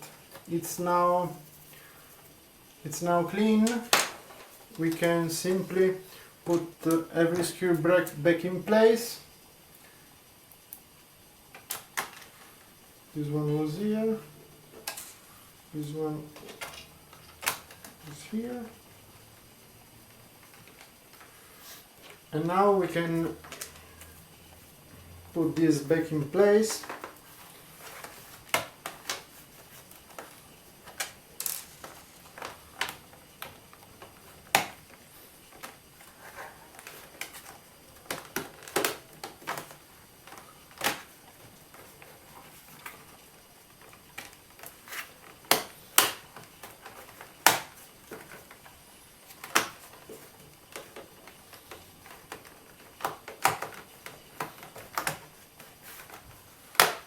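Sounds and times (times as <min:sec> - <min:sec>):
laptop parts clicking and knocking: 0:51.7 - 0:55.3.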